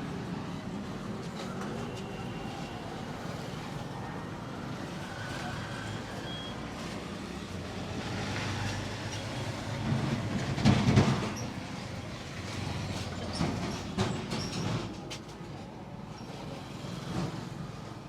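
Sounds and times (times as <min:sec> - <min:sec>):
rumble of passing vehicles: 0:00.0 - 0:18.0.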